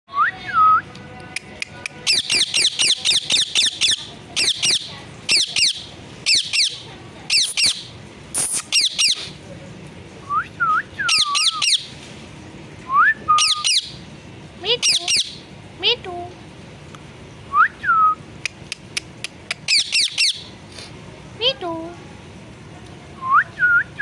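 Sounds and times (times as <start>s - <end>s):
parrot squawking: 2.0s - 9.4s, 11.1s - 11.9s, 13.4s - 14.0s, 14.6s - 15.4s, 19.6s - 20.6s.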